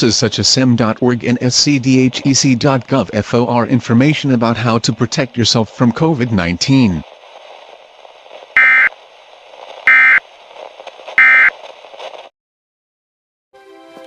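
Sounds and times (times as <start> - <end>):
faint hiss: 1.6 - 12.3
buzzing digital code tones: 8.6 - 8.9, 9.9 - 10.2, 11.2 - 11.5.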